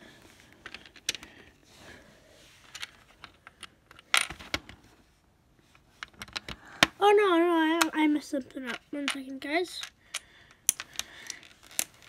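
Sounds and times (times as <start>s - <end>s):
plastic pieces clicking: 9.8s - 12.0s.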